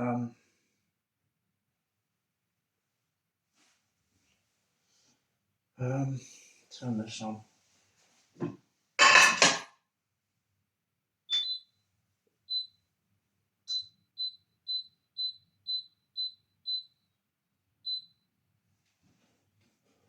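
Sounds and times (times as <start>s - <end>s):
cooker control panel beeping: 11.3s - 11.6s, 13.7s - 16.9s.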